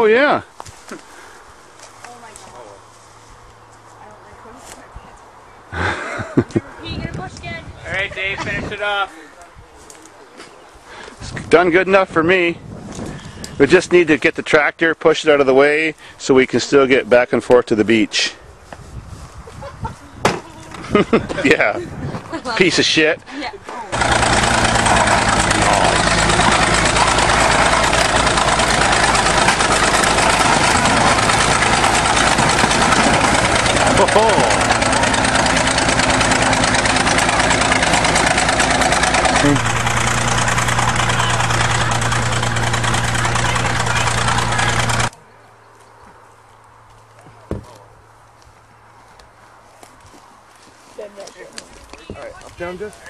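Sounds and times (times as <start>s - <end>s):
heavy engine idling: 23.9s - 45.1s.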